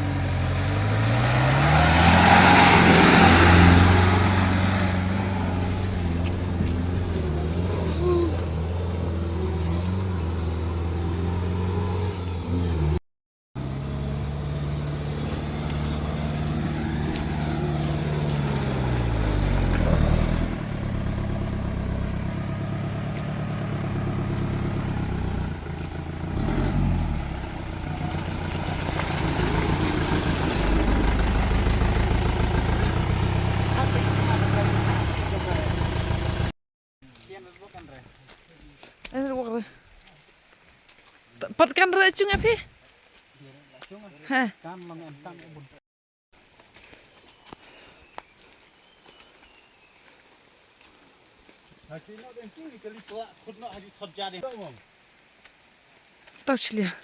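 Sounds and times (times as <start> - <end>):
vehicle engine running under load: 0.0 - 13.0, 13.6 - 36.5.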